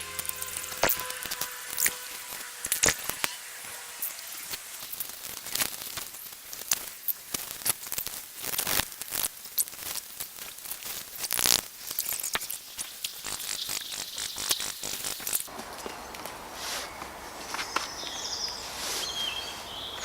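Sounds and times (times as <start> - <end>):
loud rasp: 0.0 - 4.8
soft steady hiss: 0.0 - 20.0.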